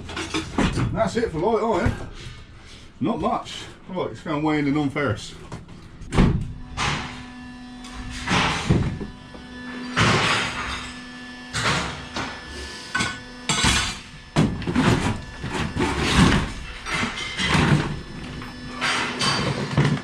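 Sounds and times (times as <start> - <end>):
scrap metal clanging: 14.7 - 20.0.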